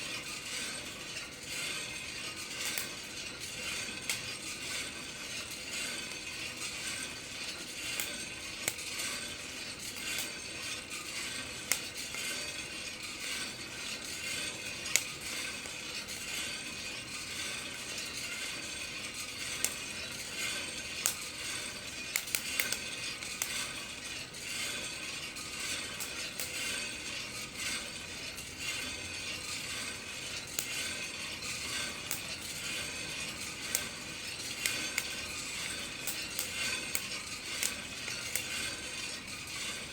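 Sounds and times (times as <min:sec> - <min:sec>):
beans rattling in rotating drum: 0:00.0 - 0:39.9
coffee beans popping: 0:22.1 - 0:23.8, 0:31.4 - 0:39.0.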